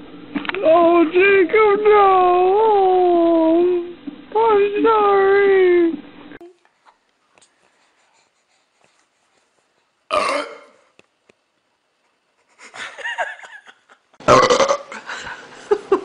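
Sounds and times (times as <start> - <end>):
person burping: 10.1 - 10.8, 14.2 - 15.0.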